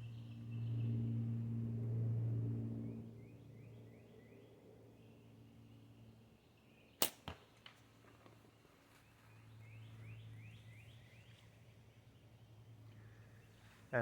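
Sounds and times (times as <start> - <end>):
slingshot crack: 7.0 - 7.8.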